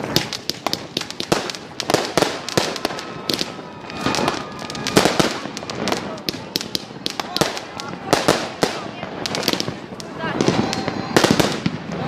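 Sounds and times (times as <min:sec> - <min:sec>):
fireworks banging: 0:00.0 - 0:12.0
faint firework whistle: 0:02.4 - 0:05.4.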